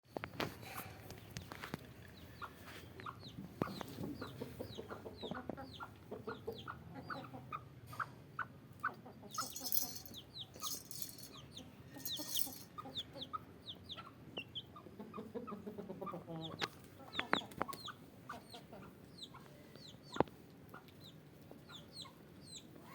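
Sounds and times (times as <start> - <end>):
chickens clucking: 2.2 - 22.6.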